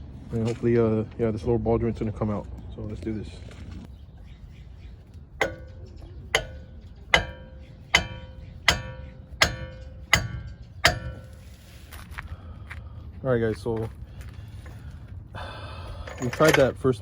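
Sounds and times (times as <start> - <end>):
sledgehammer striking metal tool: 5.4 - 11.6.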